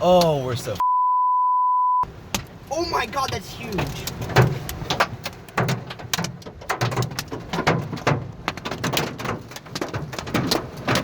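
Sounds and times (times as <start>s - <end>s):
hailstones clattering on car: 2.2s - 11.0s.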